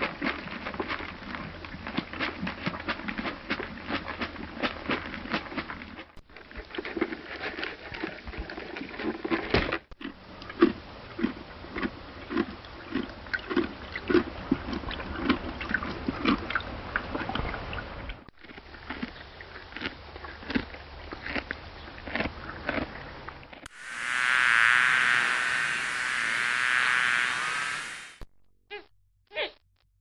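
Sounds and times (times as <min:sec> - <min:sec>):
animal chewing feed: 0:00.0 - 0:23.9.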